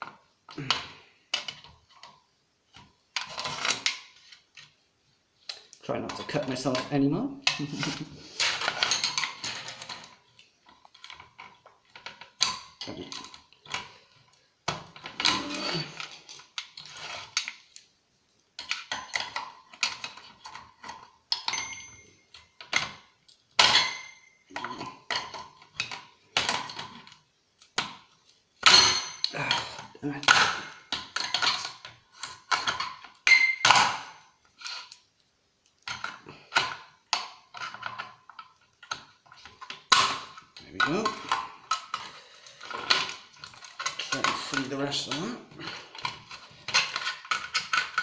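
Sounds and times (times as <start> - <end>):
metal scraping and clinking: 3.2 - 4.7, 5.6 - 17.8, 18.6 - 23.0, 28.6 - 35.0, 35.8 - 48.0.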